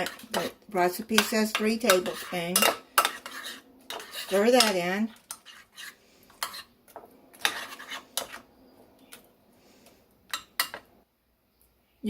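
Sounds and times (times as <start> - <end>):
utensil stirring food in dish: 0.0 - 10.9
utensil clinking against dish: 1.2 - 5.5.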